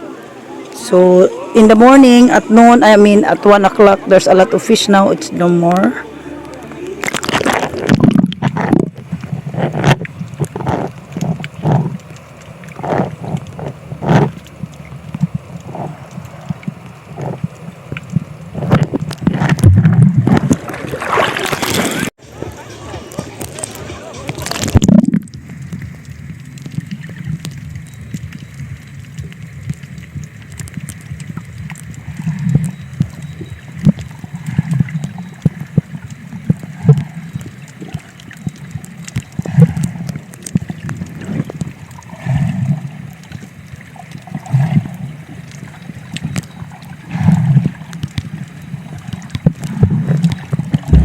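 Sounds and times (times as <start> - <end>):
seawater sloshing and gurgling: 0.0 - 51.0
small scattered clicks: 24.3 - 42.1, 47.7 - 50.9.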